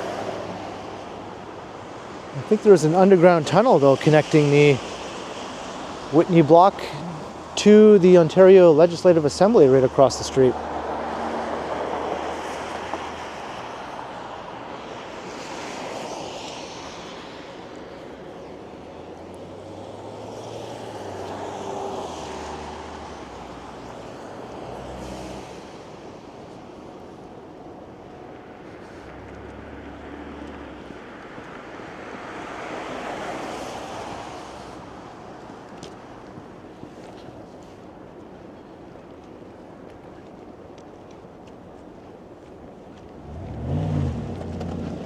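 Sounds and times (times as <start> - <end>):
vehicle tyre noise: 0.0 - 25.6, 28.3 - 37.6, 42.5 - 45.0
passing vehicle tyre hiss: 9.3 - 18.4, 19.2 - 26.1, 43.2 - 45.0
low engine hum: 42.9 - 45.0.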